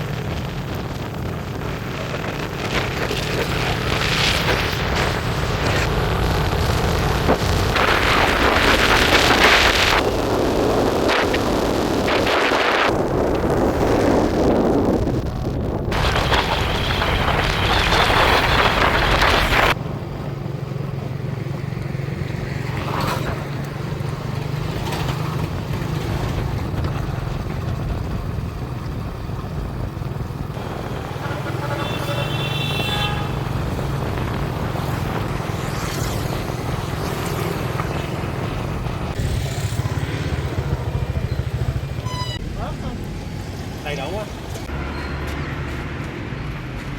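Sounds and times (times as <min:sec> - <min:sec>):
wind buffeting microphone: 0:00.0 - 0:19.8, 0:23.4 - 0:32.0
motorbike engine running: 0:37.7 - 0:42.7.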